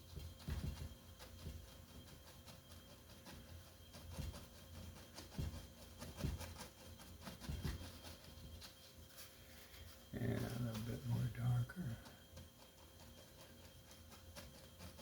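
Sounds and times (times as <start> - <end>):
soft knocks on canvas and easel: 0.0 - 2.1, 3.9 - 8.6
paintbrush strokes on canvas: 0.0 - 15.0.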